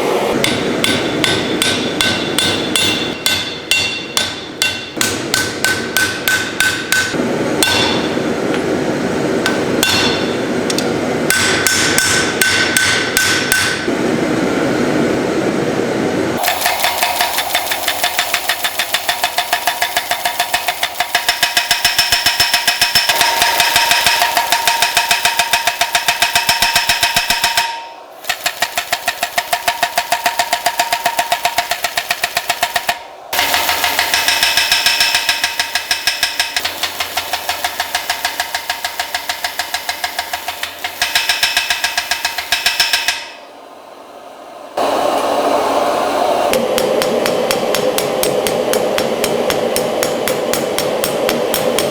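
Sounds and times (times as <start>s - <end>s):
steady rushing noise: 0.0s - 5.3s
machine knocking with metallic ring: 16.4s - 43.4s.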